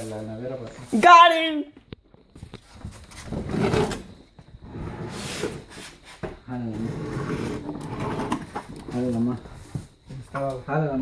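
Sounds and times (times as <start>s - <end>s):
refrigerator scraping along floor: 2.6s - 9.4s.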